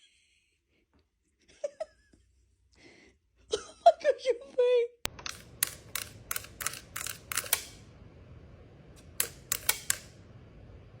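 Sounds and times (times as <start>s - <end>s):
sharp clicks: 5.1s - 7.8s, 9.0s - 10.2s.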